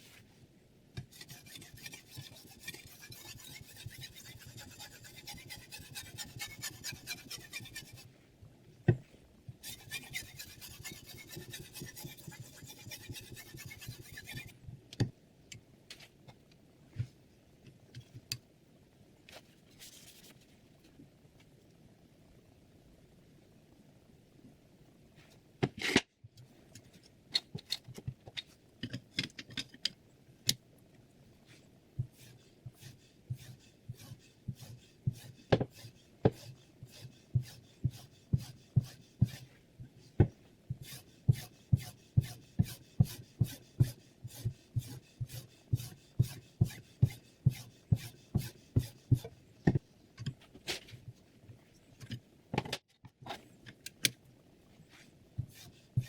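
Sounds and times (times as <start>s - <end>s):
knife scraping on whetstone: 1.1s - 8.1s, 9.6s - 14.5s, 32.2s - 39.5s, 40.8s - 49.3s, 55.4s - 56.0s.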